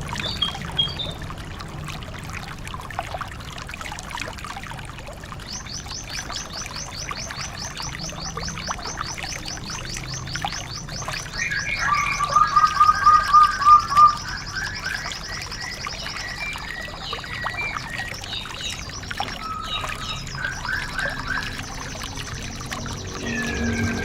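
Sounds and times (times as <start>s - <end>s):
songbirds trilling and chirping: 0.0s - 1.3s, 5.3s - 24.0s
bird whistle: 11.4s - 18.1s, 22.6s - 24.0s.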